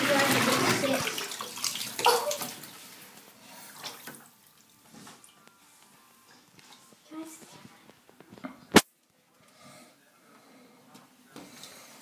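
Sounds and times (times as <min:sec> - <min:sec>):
water splashing and sloshing: 0:00.0 - 0:05.3.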